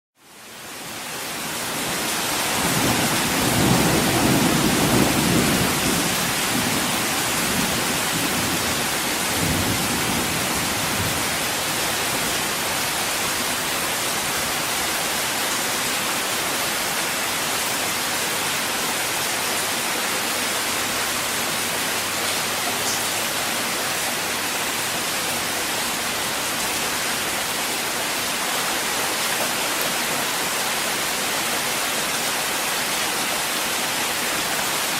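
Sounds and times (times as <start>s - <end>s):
heavy rain: 0.2s - 34.9s
thunder rumbling: 2.6s - 11.4s.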